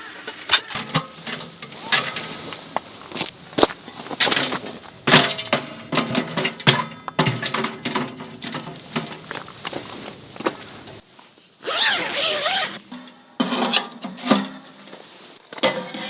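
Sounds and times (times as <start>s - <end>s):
rustling: 0.0s - 12.9s
knocks and clatters: 0.3s - 11.0s.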